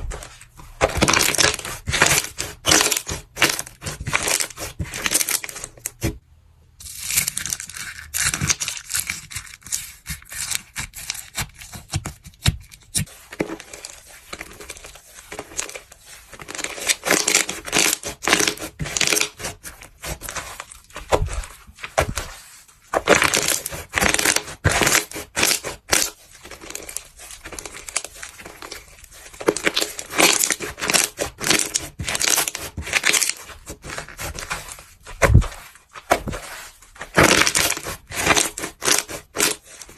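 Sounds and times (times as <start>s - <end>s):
crunchy material crushed by hand: 0.8s - 6.1s, 16.4s - 39.9s.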